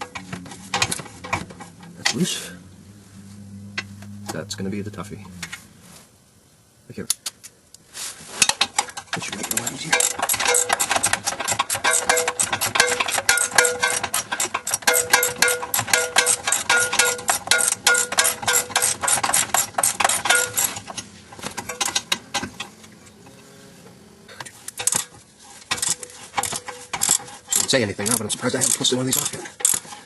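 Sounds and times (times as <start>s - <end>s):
ratchet wrench clicking: 9.4s - 20.9s, 25.7s - 30.0s.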